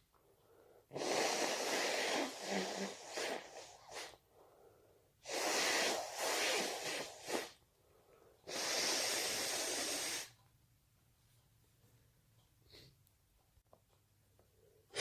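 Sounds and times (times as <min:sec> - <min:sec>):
noisy breaths: 0:00.2 - 0:10.4.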